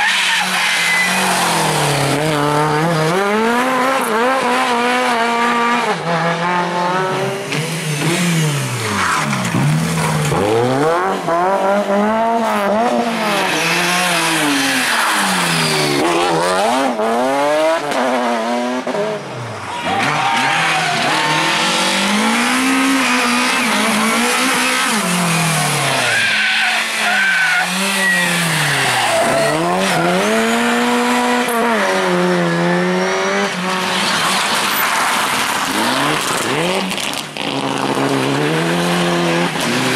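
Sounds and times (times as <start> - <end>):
rally car engine revving: 0.0 - 39.9
tyres squealing: 23.2 - 30.8.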